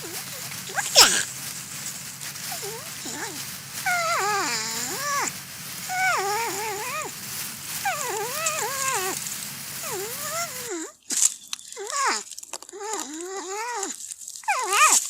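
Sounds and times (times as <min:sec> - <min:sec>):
porcupine wavering calls: 0:00.0 - 0:10.9.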